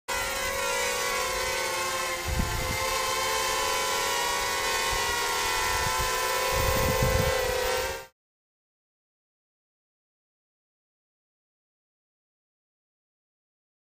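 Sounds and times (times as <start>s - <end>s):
drone motors buzzing: 0.1s - 8.1s.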